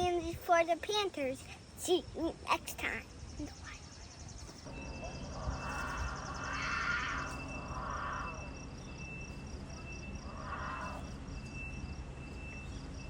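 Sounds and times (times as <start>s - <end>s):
faint steady high tone: 3.4s - 13.0s
rhythmic high chirping: 3.6s - 13.0s.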